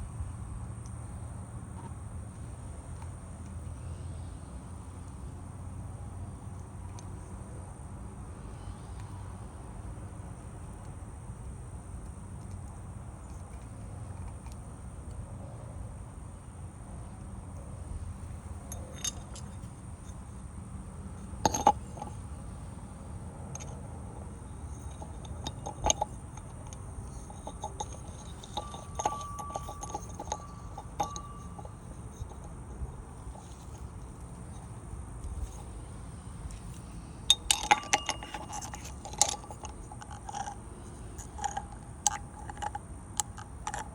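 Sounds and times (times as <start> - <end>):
thin steady tone: 21.2 - 43.9
small hard parts clicking: 21.3 - 22.3, 23.5 - 35.8, 36.4 - 43.9.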